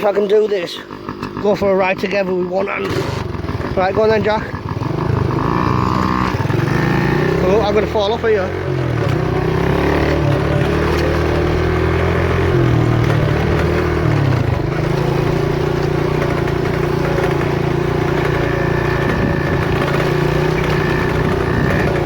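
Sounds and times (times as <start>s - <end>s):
motorbike engine running: 0.0s - 22.0s.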